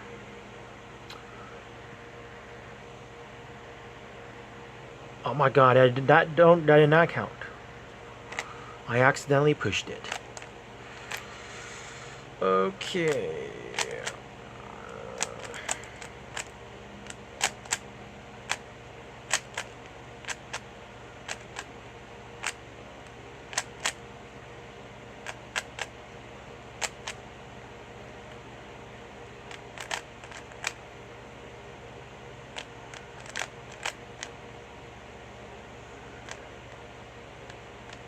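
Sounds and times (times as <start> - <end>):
steady low hum: 0.0 - 38.0
puzzle cube plastic clicks: 10.0 - 11.3, 13.0 - 14.2, 15.1 - 17.8, 19.3 - 21.7, 22.4 - 22.6, 23.5 - 24.0, 25.2 - 25.9, 26.8 - 27.2, 29.4 - 30.8, 32.5 - 34.4, 36.2 - 36.8, 37.4 - 38.0.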